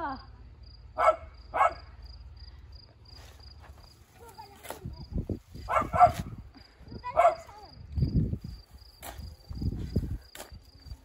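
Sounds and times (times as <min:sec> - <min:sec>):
cricket chirping: 0:00.0 - 0:11.0
dog barking: 0:01.0 - 0:01.9, 0:05.7 - 0:06.3, 0:07.2 - 0:07.5.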